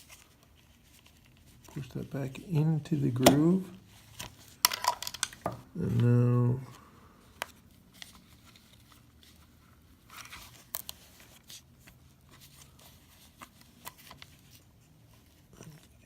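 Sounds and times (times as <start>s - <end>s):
plastic parts clicking: 4.6s - 5.6s.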